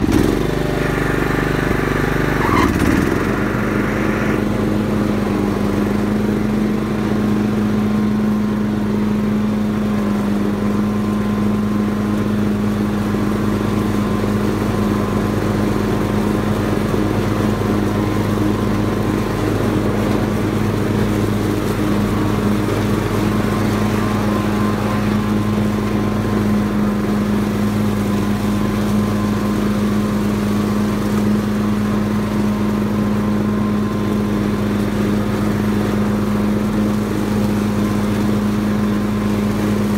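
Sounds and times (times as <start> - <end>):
lawn tractor engine droning: 0.0 - 39.9.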